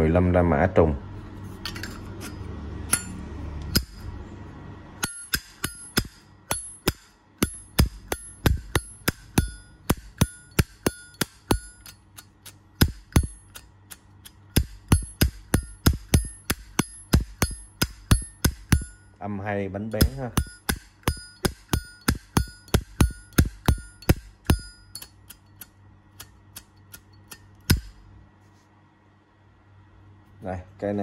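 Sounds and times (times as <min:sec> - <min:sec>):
soft handling noise: 0:01.2 - 0:02.5.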